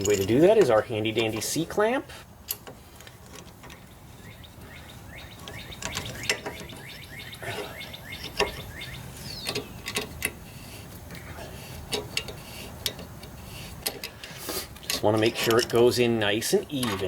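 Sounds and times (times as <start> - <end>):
birds chirping: 3.0 - 12.5
sharp metal clicks: 5.3 - 10.4.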